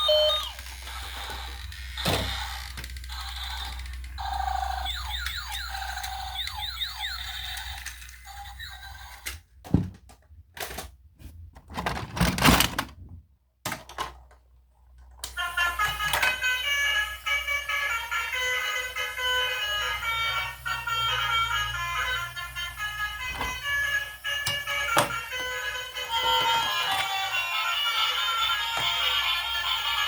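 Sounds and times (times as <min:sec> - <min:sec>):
beeping electronic tune: 0:00.0 - 0:00.6, 0:04.2 - 0:07.6
falling electronic chirps: 0:00.0 - 0:00.6, 0:04.3 - 0:07.6
toy clicks and knocks: 0:00.0 - 0:09.4, 0:15.1 - 0:16.7.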